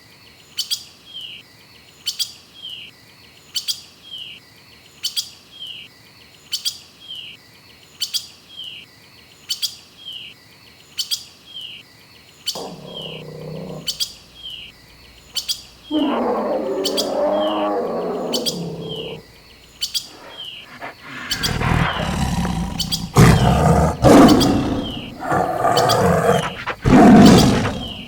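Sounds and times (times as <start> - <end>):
lower-pitched animal call: 12.6 - 14.6, 15.8 - 19.4, 20.1 - 28.0.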